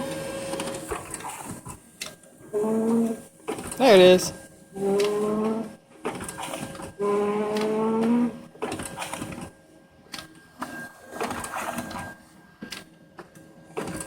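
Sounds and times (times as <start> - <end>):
printer whining: 0.0 - 1.8, 2.5 - 12.9
printer clicks and clatters: 4.8 - 9.5, 13.8 - 14.0.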